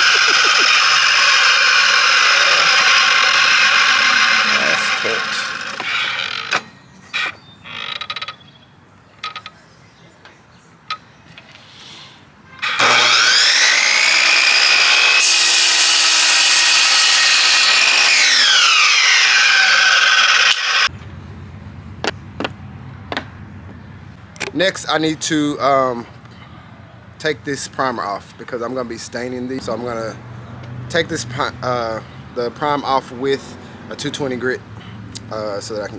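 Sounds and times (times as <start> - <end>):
miter saw cutting wood: 0.0 - 7.4, 12.6 - 20.9
handling knocks and clicks: 22.0 - 24.6.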